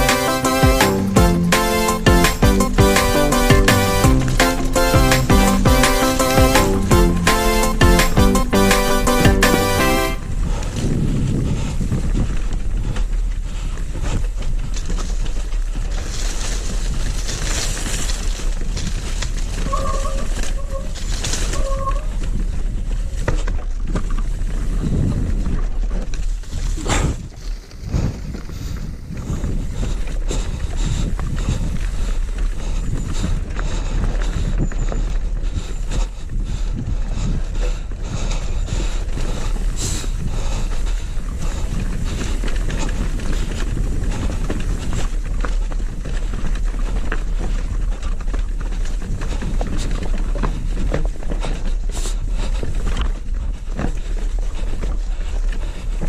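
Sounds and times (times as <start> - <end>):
steady rumble: 0.0 - 14.0
wind buffeting microphone: 10.2 - 56.0.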